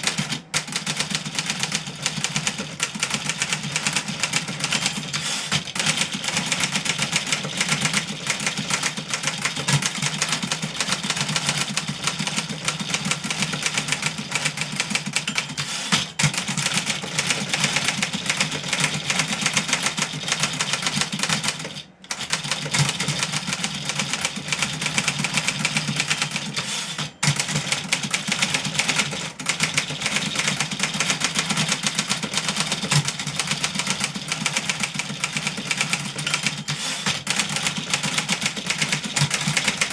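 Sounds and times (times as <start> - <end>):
typewriter keys clattering: 0.0 - 39.9.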